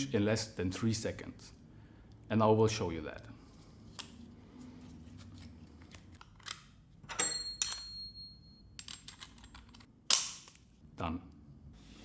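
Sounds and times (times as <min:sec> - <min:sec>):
tool accessory clicks and clinks: 0:06.2 - 0:08.2, 0:08.8 - 0:10.7.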